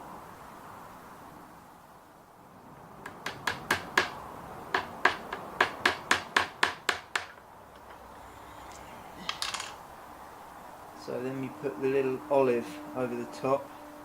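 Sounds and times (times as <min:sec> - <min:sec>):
hammer tapping pin: 0:03.0 - 0:08.0.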